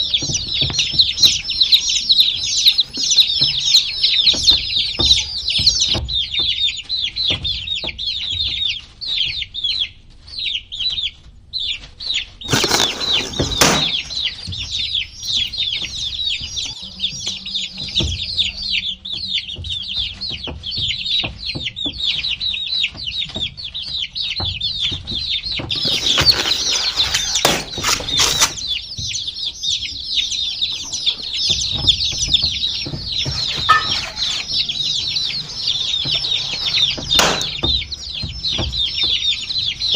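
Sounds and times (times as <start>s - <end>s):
scuffling noise: 0.0s - 6.0s, 12.5s - 18.6s, 25.7s - 39.9s
baby chicks peeping: 0.0s - 39.9s.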